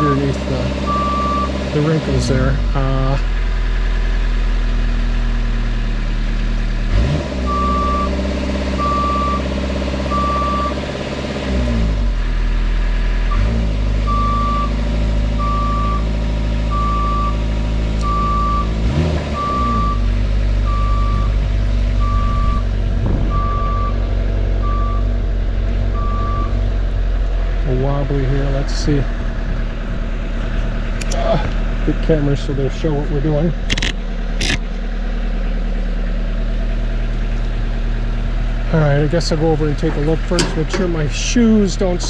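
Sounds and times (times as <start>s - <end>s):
engine revving up and down: 0.0s - 34.7s
motion alarm beeping: 0.9s - 1.5s, 23.3s - 24.0s.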